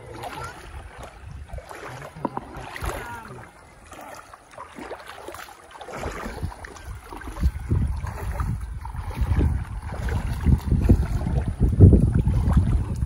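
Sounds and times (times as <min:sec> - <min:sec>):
river water rushing and splashing: 0:00.0 - 0:13.0
wind gusts on microphone: 0:00.6 - 0:01.7, 0:06.0 - 0:13.0.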